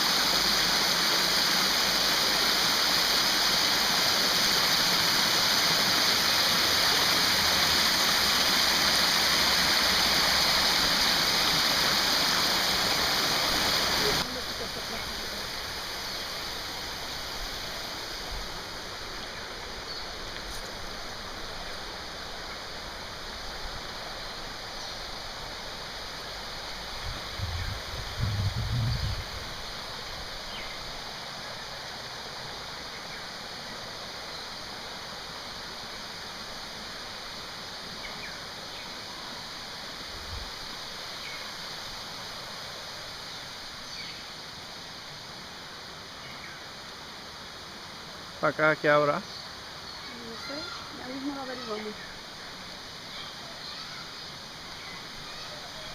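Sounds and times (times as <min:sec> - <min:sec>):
waterfall rushing into pool: 0:00.0 - 0:55.9
low rumble on microphone: 0:27.1 - 0:29.5.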